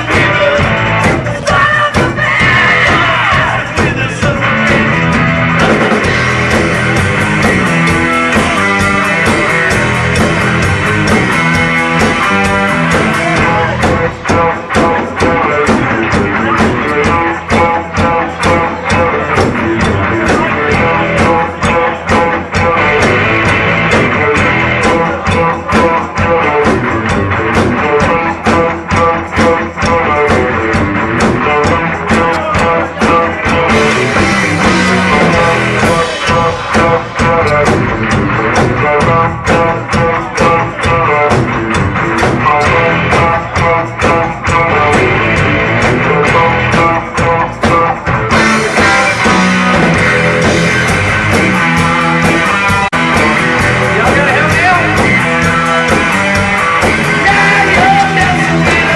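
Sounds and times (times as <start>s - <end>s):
drum kit beat: 0.0s - 58.9s
electric guitar: 0.0s - 58.9s.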